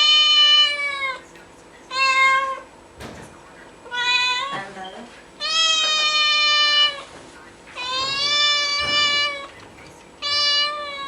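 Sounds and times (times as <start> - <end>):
cat meowing: 1.9 - 2.7, 3.9 - 4.7, 5.4 - 7.1, 7.8 - 9.6, 10.2 - 11.0.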